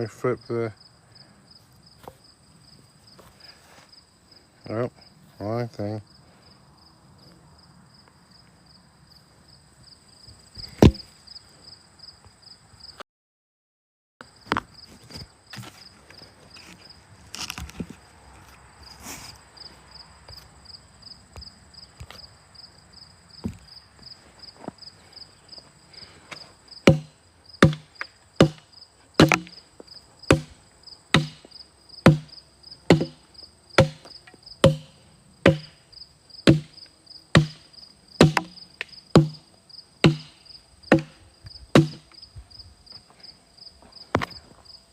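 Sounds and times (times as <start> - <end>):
insects chirping: 0.0 - 13.0, 14.2 - 44.9
hatchet chopping wooden log: 10.8 - 11.1, 26.9 - 29.6, 30.3 - 35.8, 36.4 - 36.8, 37.4 - 39.4, 40.0 - 41.2, 41.8 - 42.2.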